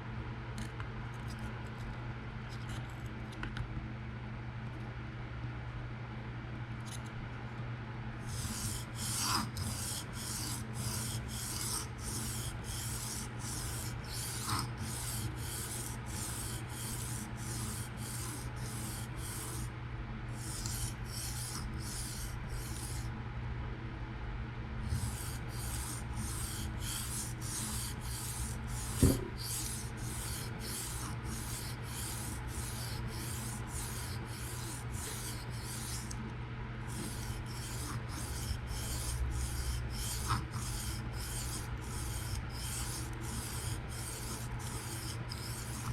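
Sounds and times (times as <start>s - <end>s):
knife scraping on sharpening stone: 8.3s - 19.6s, 20.4s - 23.0s, 24.9s - 36.2s, 36.9s - 45.9s.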